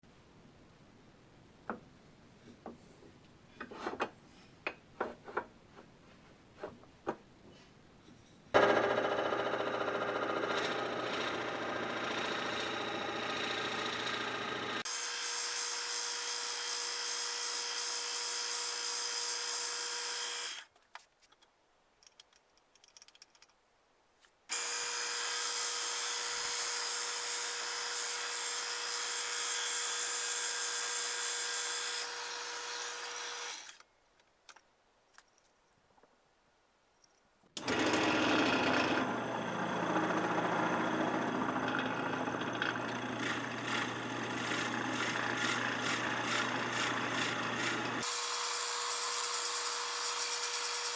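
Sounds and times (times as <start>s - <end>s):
lower-pitched power tool: 8.6s - 20.6s, 24.5s - 33.8s, 37.6s - 50.9s
electric drill boring wood: 8.6s - 20.7s, 24.5s - 33.8s, 37.6s - 50.9s.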